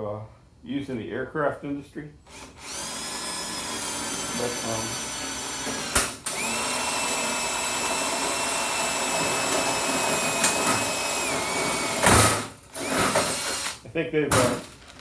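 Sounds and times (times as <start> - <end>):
electric drill drilling through metal: 2.3 - 13.8.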